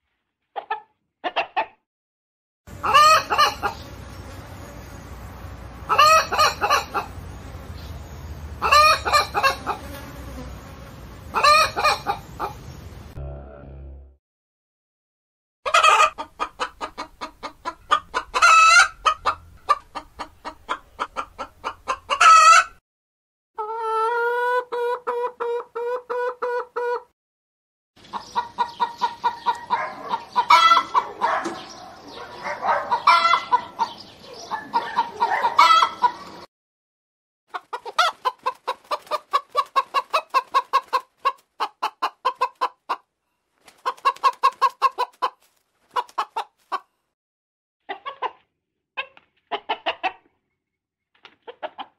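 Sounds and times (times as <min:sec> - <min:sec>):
chickens clucking: 0:00.5 - 0:01.8, 0:02.7 - 0:03.9, 0:05.8 - 0:09.9, 0:11.3 - 0:12.8, 0:15.7 - 0:22.8, 0:23.6 - 0:27.1, 0:28.0 - 0:36.5, 0:37.5 - 0:46.9, 0:47.8 - 0:50.4, 0:51.2 - 0:51.9
hen long drawn-out call: 0:02.8 - 0:03.8.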